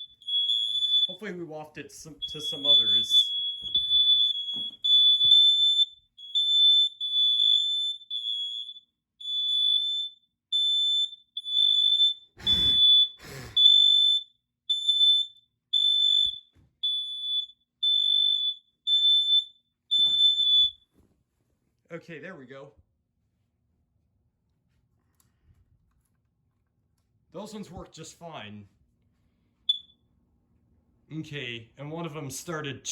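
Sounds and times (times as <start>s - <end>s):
smoke alarms beeping: 0.0s - 20.9s, 29.6s - 30.0s.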